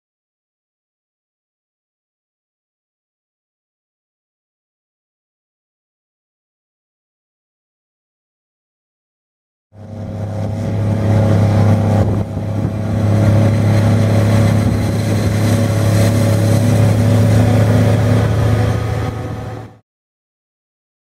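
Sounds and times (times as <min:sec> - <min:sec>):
heavy diesel engine droning: 0:09.8 - 0:19.8.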